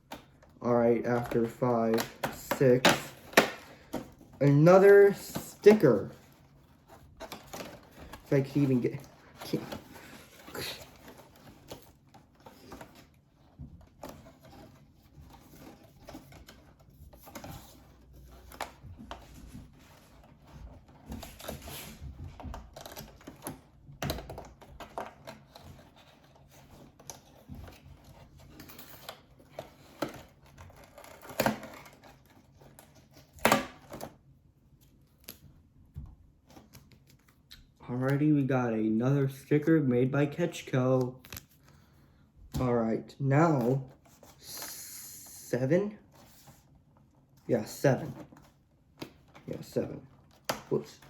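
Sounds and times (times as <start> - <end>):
packaging clicks and rustles: 0.0 - 34.3.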